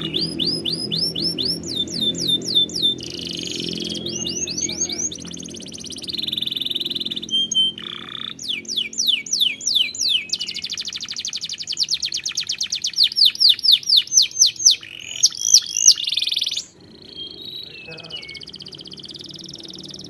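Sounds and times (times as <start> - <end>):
fast rolling trill: 0.0 - 10.7
canary singing: 0.0 - 20.0.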